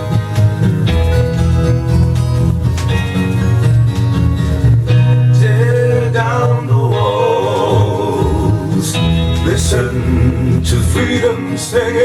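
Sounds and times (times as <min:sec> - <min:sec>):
acoustic guitar: 0:00.0 - 0:12.0
men singing long wavering notes: 0:05.2 - 0:12.0.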